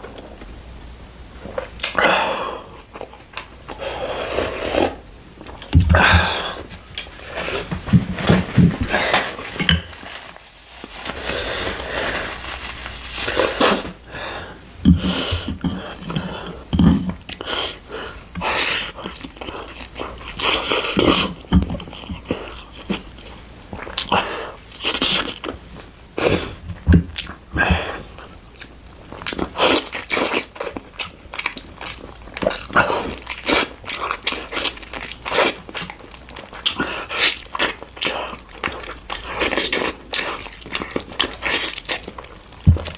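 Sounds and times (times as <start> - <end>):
person chewing crunchy food: 10.7 - 14.2, 14.9 - 42.9.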